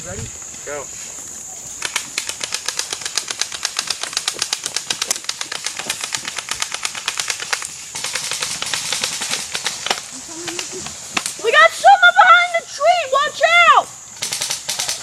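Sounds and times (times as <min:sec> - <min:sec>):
airsoft gun firing shots: 0:01.8 - 0:10.1, 0:14.2 - 0:15.0.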